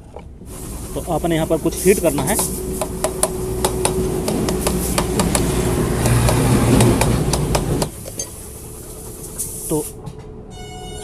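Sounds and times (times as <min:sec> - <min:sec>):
hot air rushing: 0:00.4 - 0:10.0
heat gun motor humming: 0:02.4 - 0:08.3.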